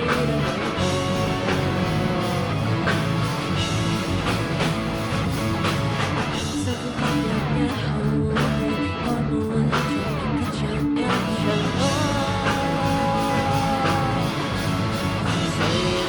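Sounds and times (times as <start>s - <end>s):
steady drum beat: 0.0s - 7.7s, 11.2s - 16.0s
rock band playing: 0.0s - 16.0s.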